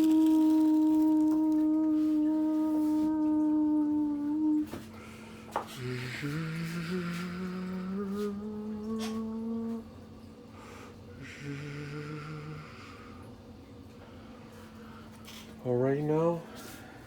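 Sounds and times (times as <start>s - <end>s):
person humming: 0.0s - 4.8s, 5.7s - 9.9s, 11.2s - 13.1s.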